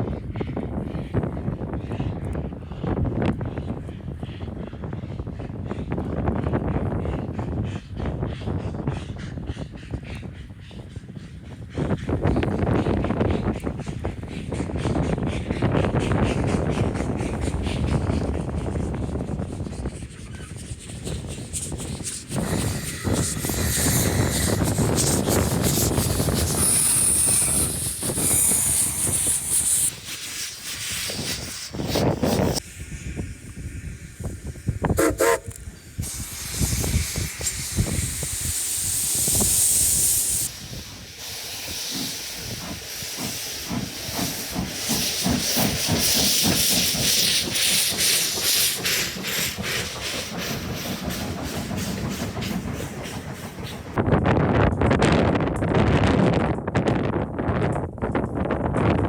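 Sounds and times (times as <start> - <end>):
steam locomotive hissing: 3.5 - 54.0
rhythmic chuffing: 14.0 - 54.0.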